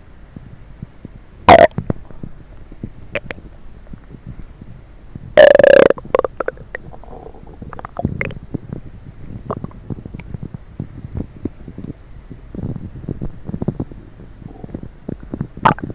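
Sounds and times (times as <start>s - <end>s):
loud stomach growl: 1.5s - 1.8s, 3.2s - 3.4s, 5.4s - 8.4s, 15.6s - 15.9s
stomach gurgling and rumbling: 1.5s - 15.9s.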